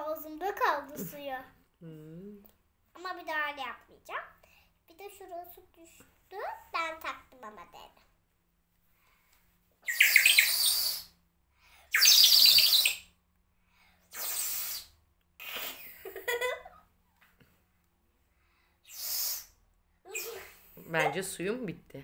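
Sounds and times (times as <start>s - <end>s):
toy bird whistle chirping: 9.8s - 11.1s, 11.9s - 13.1s, 18.9s - 19.5s.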